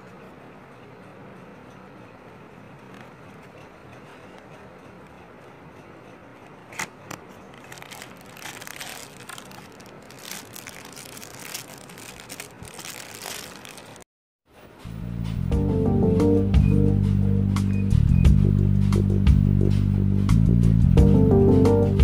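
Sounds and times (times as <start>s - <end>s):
packaging clicks: 6.7s - 14.0s
packaging crinkling and rustling: 6.7s - 14.0s.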